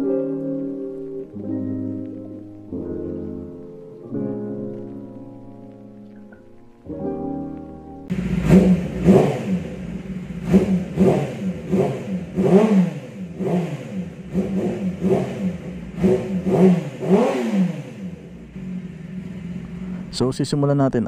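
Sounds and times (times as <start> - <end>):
motorcycle engine revving: 8.1 - 20.5.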